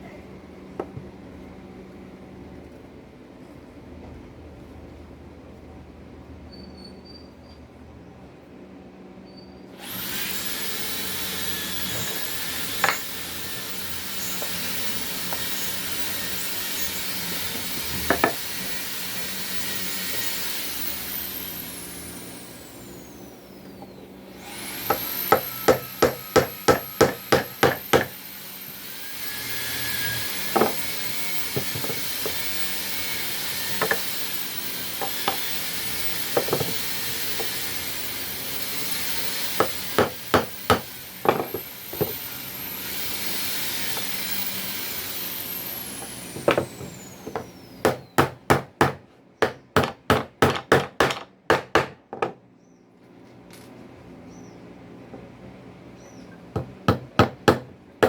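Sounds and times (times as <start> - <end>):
hammer striking wood: 11.9 - 13.2, 17.9 - 18.5, 24.8 - 28.2, 30.4 - 32.4, 33.8 - 34.1, 36.3 - 37.6, 39.6 - 42.2, 46.4 - 52.4, 56.5 - 57.8.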